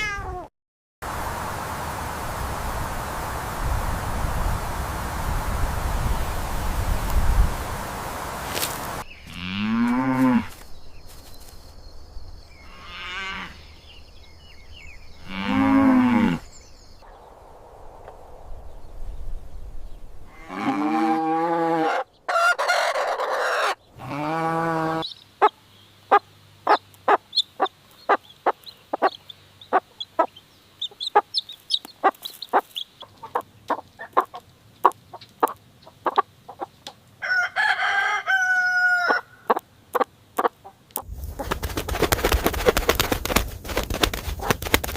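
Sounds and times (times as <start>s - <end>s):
rooster crowing: 21.0s - 25.1s, 37.2s - 39.4s
chickens clucking: 25.4s - 37.0s, 39.1s - 43.4s.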